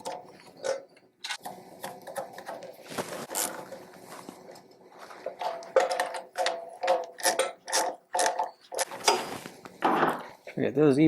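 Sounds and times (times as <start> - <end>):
metal tools clicking and rattling: 5.3 - 9.2.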